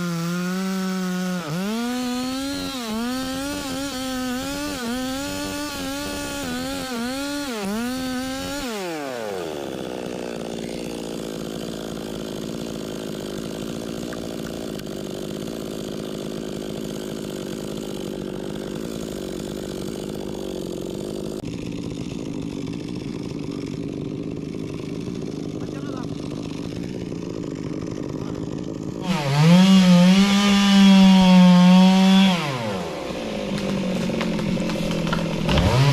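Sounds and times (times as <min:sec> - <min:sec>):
chainsaw running: 0:00.0 - 0:35.9.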